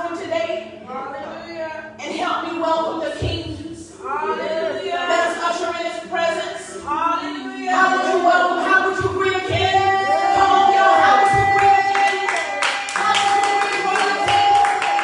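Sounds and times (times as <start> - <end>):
worship singing: 0.0 - 15.0
rhythmic hand-clapping: 10.9 - 15.0.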